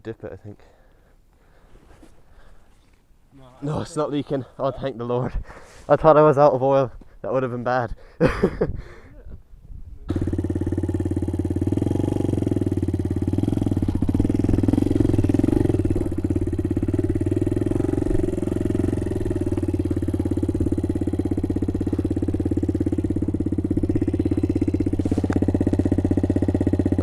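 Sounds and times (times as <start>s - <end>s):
motorbike engine idling: 10.1s - 27.0s.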